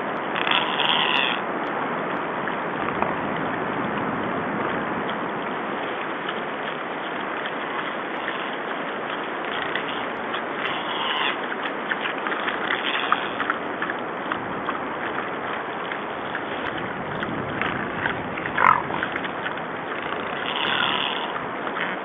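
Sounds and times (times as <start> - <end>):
steady background hiss: 0.0 - 17.0
wild boars squealing: 0.4 - 1.4, 9.5 - 13.6, 18.5 - 19.0, 20.0 - 21.4.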